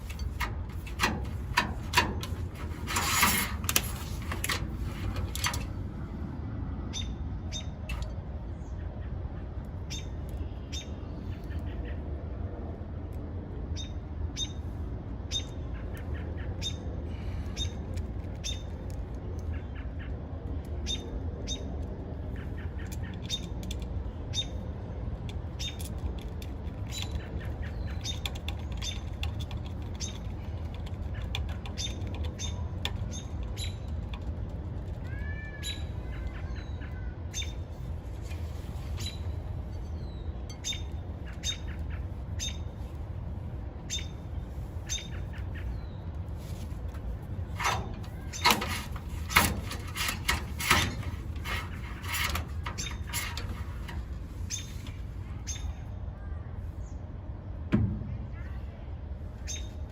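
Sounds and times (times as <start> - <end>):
steady low rumble: 0.0 - 28.0, 29.1 - 59.9
small birds chirping: 15.3 - 34.3, 34.9 - 37.9, 38.9 - 43.0, 43.7 - 46.4, 52.7 - 56.0, 59.4 - 59.9.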